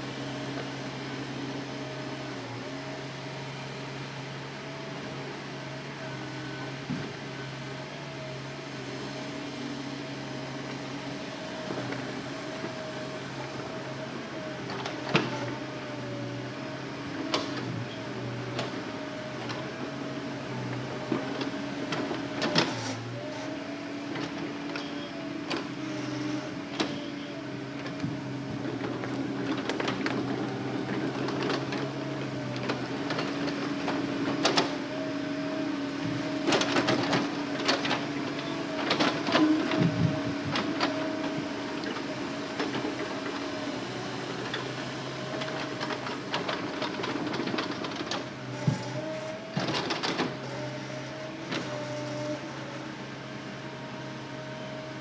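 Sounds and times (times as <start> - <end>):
excavator engine and hydraulic hum: 0.0 - 55.0.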